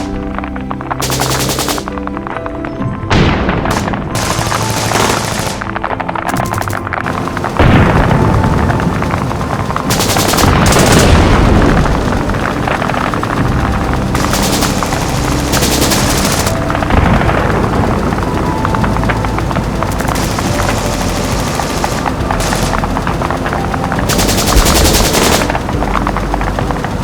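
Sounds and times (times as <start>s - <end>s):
machine-gun fire: 0.0s - 2.2s, 3.3s - 27.0s
continuous low rumble: 0.0s - 27.0s
loud boom: 7.0s - 23.3s.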